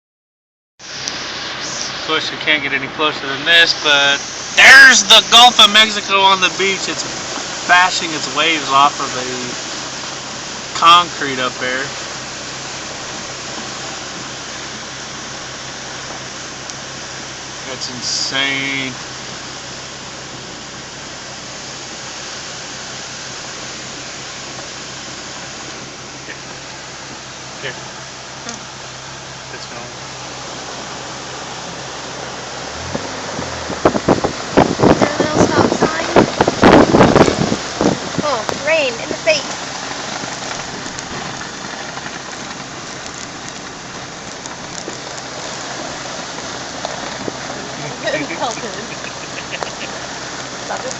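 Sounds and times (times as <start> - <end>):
heavy rain pouring: 0.8 - 50.9
surf: 0.8 - 50.9
raindrops ticking close by: 4.3 - 50.9
roaring wind: 29.9 - 50.9
low steady hum: 40.6 - 50.9.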